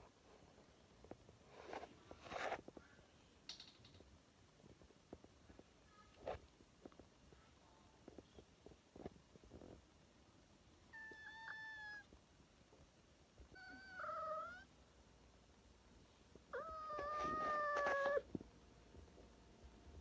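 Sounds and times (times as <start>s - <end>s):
cat meowing: 10.9s - 12.1s, 13.5s - 14.7s, 16.5s - 18.2s.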